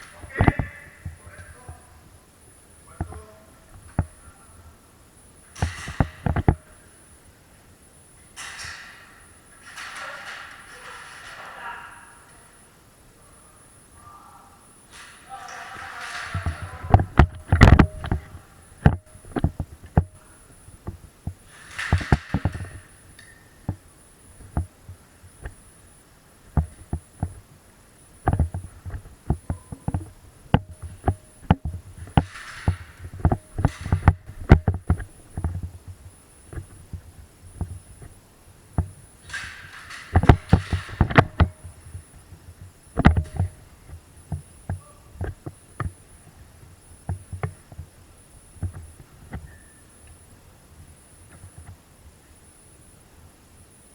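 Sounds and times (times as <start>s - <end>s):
knocks and clicks: 15.8s - 25.6s, 28.2s - 38.2s, 38.8s - 46.0s.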